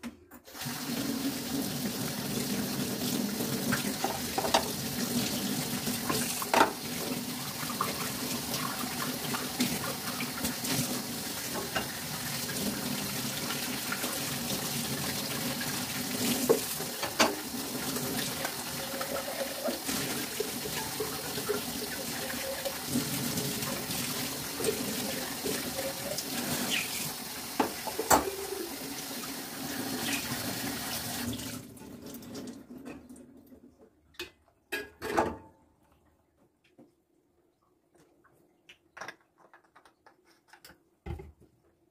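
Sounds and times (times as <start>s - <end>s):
tap water running into sink: 0.5s - 33.0s.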